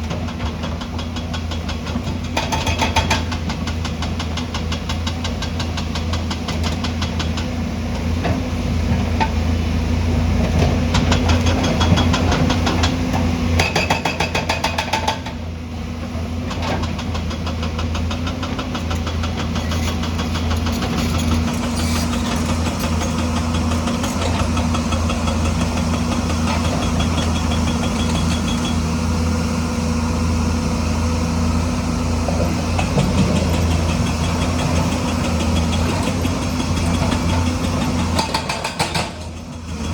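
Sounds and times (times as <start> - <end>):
heavy diesel engine running: 15.2 - 39.9.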